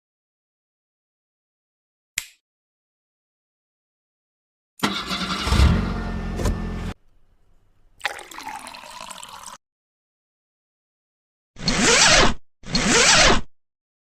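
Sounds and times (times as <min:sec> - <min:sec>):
car engine starting: 0:04.8 - 0:07.0.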